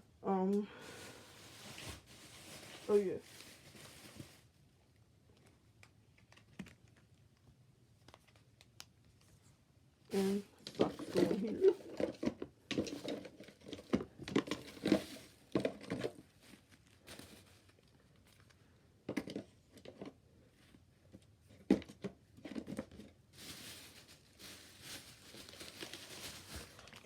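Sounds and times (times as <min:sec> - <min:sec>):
gift bag crinkling: 0:00.8 - 0:04.5, 0:23.0 - 0:27.0.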